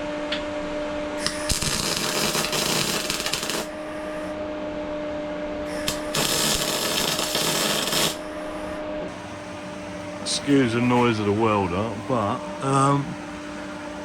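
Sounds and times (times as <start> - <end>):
welding arc crackle: 1.2 - 3.8, 5.7 - 8.2
welder humming: 1.2 - 4.4, 5.7 - 14.0.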